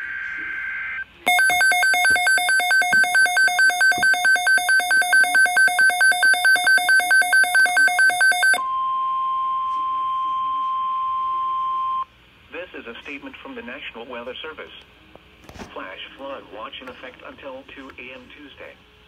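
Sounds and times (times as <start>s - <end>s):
steady radio warning tone: 0.0s - 8.6s.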